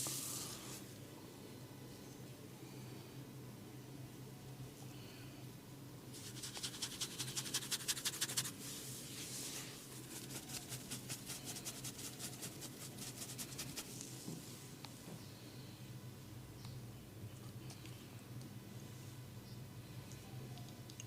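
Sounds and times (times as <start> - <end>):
scalp scratching: 6.2 - 8.6, 9.2 - 13.9
soft rubbing: 6.2 - 14.7.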